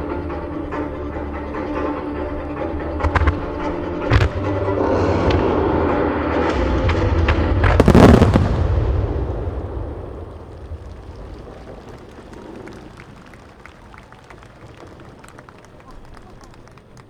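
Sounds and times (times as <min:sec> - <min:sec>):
fireworks crackling: 0:02.9 - 0:17.0
fireworks shells bursting: 0:03.0 - 0:13.9.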